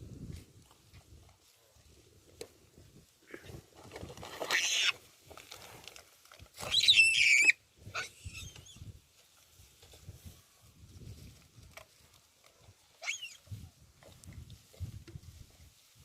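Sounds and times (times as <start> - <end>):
monkey shrieking: 4.5 - 5.0, 6.7 - 8.6.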